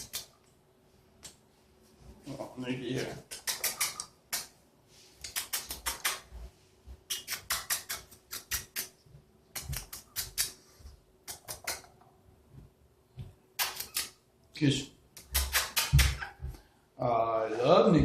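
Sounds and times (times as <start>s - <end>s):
bird making kissing sounds: 3.2s - 4.6s, 5.2s - 6.3s, 7.1s - 10.6s, 11.2s - 11.9s, 13.6s - 14.2s, 15.2s - 16.4s.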